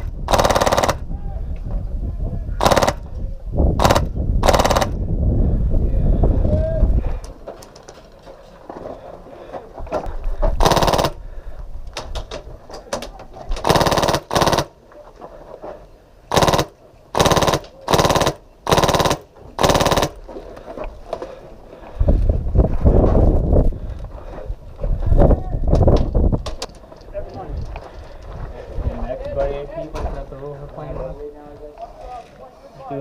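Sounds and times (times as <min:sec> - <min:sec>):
airsoft gun full-auto bursts: 0:00.3 - 0:01.0, 0:02.6 - 0:03.0, 0:03.8 - 0:05.0, 0:10.6 - 0:11.2, 0:13.6 - 0:14.7, 0:16.3 - 0:20.2.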